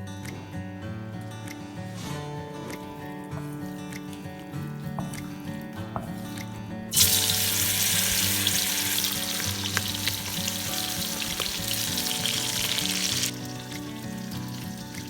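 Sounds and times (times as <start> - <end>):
food sizzling in hot oil: 6.9 - 15.0
oil crackling and popping: 6.9 - 15.0.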